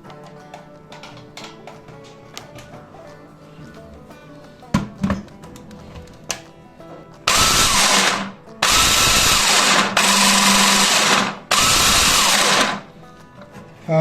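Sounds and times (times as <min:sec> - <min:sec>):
food processor motor whirring: 0:07.3 - 0:12.9.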